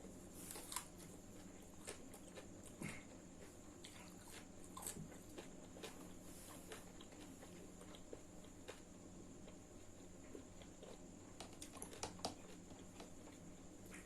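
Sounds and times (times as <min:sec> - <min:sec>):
person chewing: 0:00.0 - 0:14.0.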